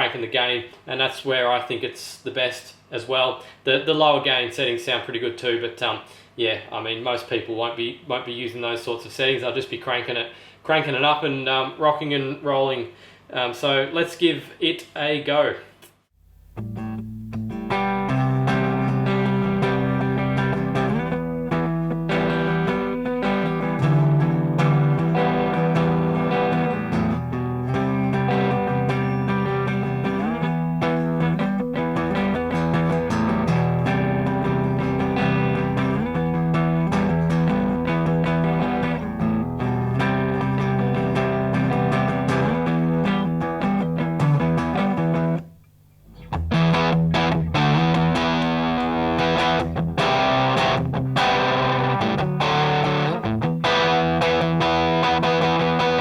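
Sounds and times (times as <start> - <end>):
distorted electric guitar riffs: 16.4 - 56.0.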